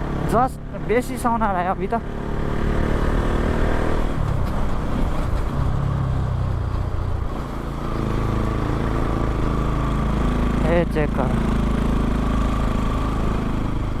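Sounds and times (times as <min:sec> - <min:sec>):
bassy motorcycle engine: 0:00.0 - 0:14.0.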